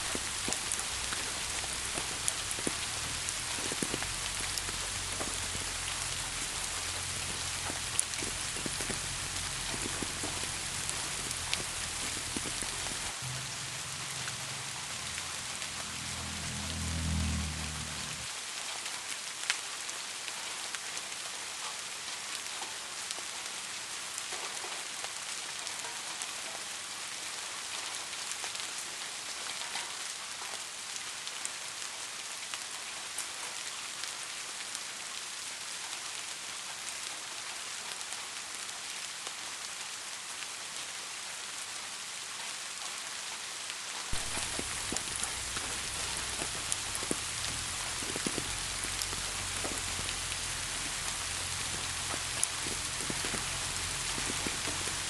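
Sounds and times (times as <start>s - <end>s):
low rumble: 0.0s - 18.3s, 44.1s - 55.0s
raindrops hitting a surface: 0.0s - 55.0s
steady rain falling: 0.0s - 55.0s.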